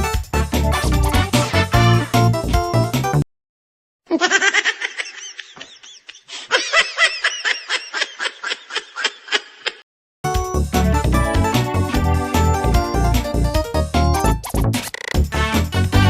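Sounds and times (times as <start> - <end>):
music: 0.0 - 3.2, 10.3 - 16.0
person laughing hard: 4.1 - 9.8.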